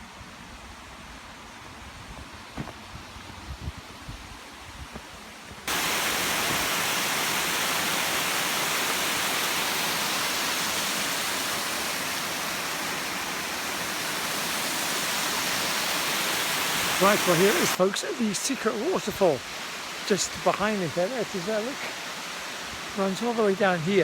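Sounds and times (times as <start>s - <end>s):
waterfall rushing: 5.7s - 24.0s.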